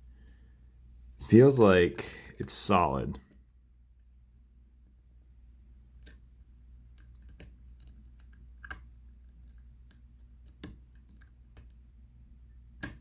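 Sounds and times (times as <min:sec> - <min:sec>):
lock pick metallic clicks: 0:06.0 - 0:06.2.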